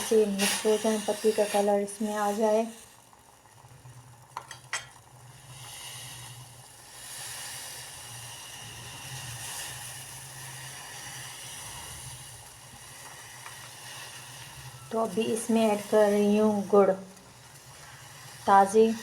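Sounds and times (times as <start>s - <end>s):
pot of water boiling: 0.0s - 19.0s.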